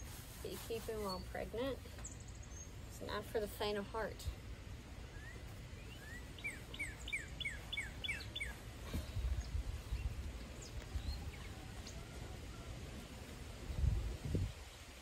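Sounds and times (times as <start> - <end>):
songbird chirping: 0.4 - 15.0.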